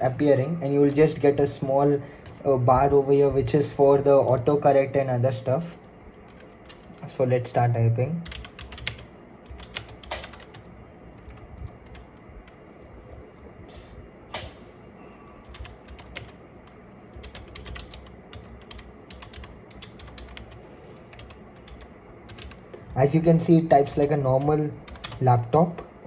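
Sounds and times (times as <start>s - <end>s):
keyboard typing clicks: 8.2s - 12.2s, 15.4s - 16.4s, 17.2s - 23.0s, 24.0s - 25.2s.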